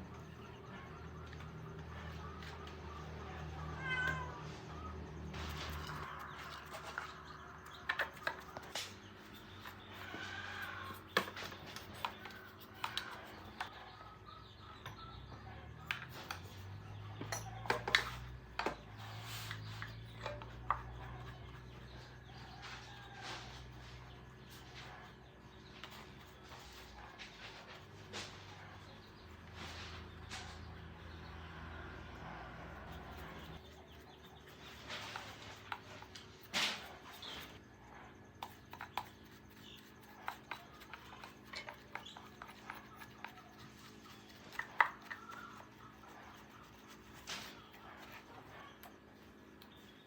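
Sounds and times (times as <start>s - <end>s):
cat meowing: 3.7s - 4.5s.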